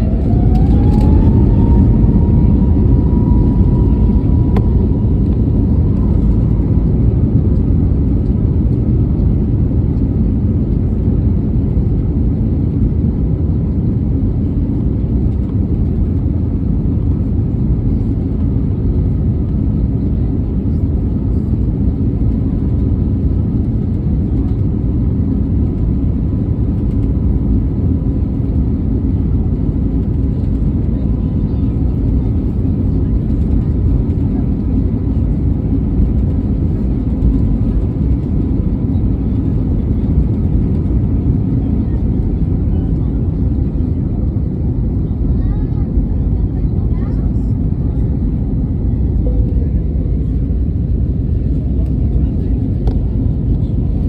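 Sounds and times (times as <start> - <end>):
jet engines spooling up: 0.0 - 6.8.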